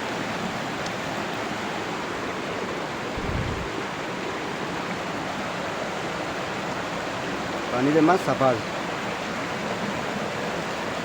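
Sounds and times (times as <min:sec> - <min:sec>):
stream water flowing: 0:00.0 - 0:11.0
dull low thump: 0:03.2 - 0:03.8.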